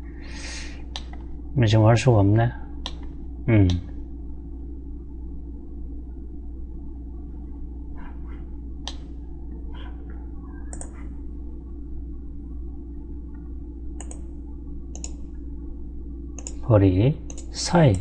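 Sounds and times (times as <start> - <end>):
low room hum: 0.0 - 18.0
computer mouse clicks: 0.9 - 1.2, 10.7 - 11.1, 14.0 - 14.3, 14.9 - 15.2, 16.4 - 16.6, 17.3 - 18.0.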